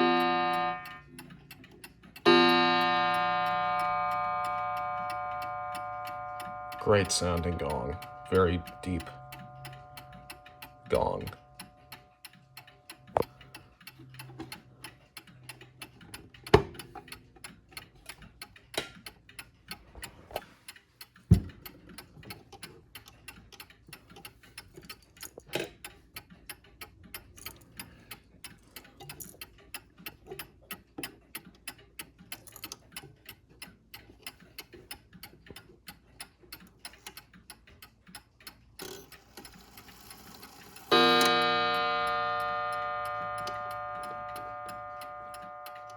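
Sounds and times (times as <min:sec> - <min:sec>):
mantel clock ticking: 0:00.0 - 0:45.9
clock knocks: 0:02.3 - 0:11.4, 0:21.3 - 0:21.6, 0:40.9 - 0:45.9.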